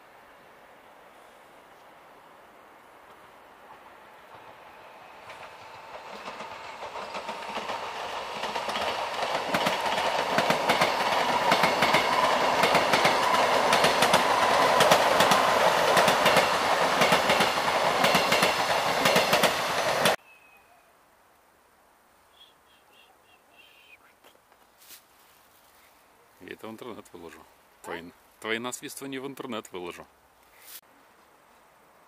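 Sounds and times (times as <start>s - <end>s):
train wheels clicking on rails: 3.1s - 20.2s.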